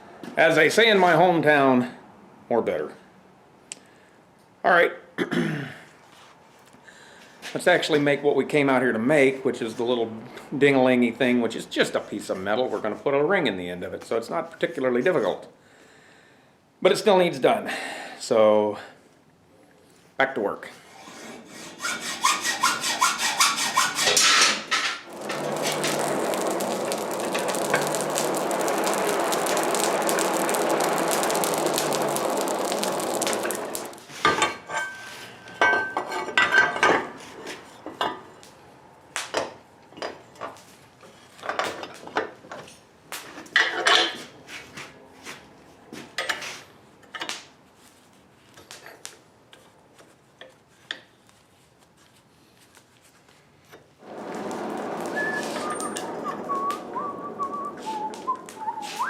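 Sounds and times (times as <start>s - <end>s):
steady rushing noise: 25.1s - 34.0s, 54.0s - 59.0s
steel tools clinking and clattering: 33.6s - 37.1s
metal piece ringing: 34.6s - 36.7s.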